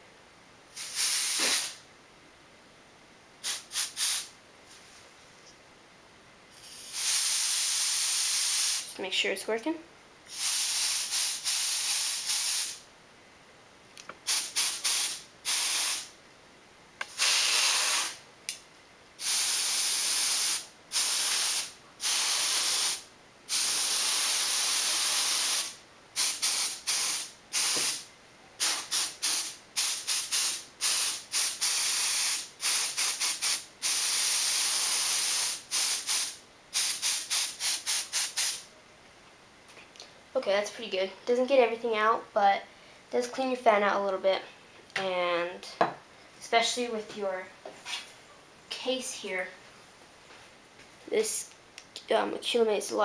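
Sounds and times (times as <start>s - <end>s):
compressed air duster hissing: 0.7s - 1.8s, 3.4s - 4.3s, 6.5s - 8.9s, 10.3s - 12.8s, 14.2s - 16.1s, 17.1s - 18.2s, 19.2s - 38.7s.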